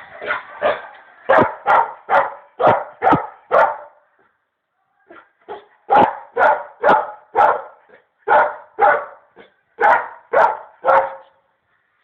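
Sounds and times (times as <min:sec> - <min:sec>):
dog barking: 0:00.6 - 0:03.9, 0:05.5 - 0:11.4.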